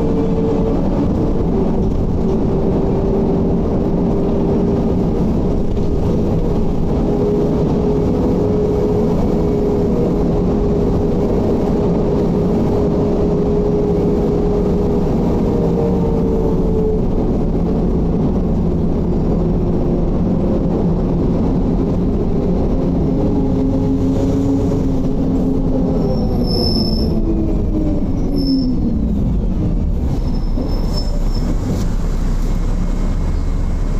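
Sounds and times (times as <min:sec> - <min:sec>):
bus diesel engine slowing: 0:00.0 - 0:33.9
brakes squealing: 0:22.9 - 0:33.9.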